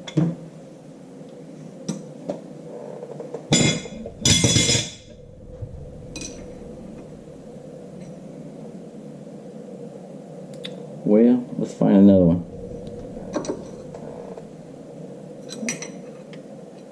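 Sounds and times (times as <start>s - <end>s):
metal scraping on metal: 3.5s - 8.2s.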